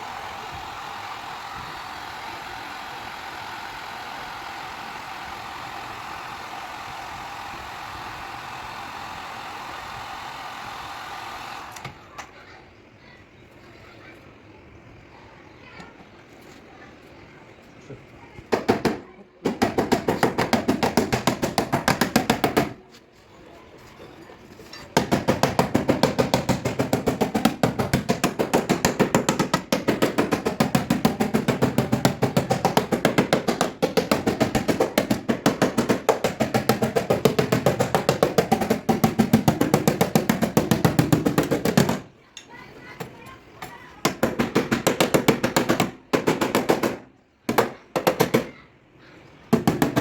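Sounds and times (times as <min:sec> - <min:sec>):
hammer tapping on car panel: 0:18.5 - 0:22.8, 0:25.0 - 0:42.0, 0:44.0 - 0:48.6, 0:49.6 - 0:50.0.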